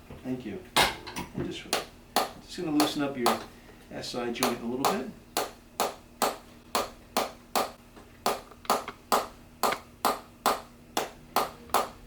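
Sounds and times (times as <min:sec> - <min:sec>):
percussive tapping on the back: 0:04.4 - 0:12.0.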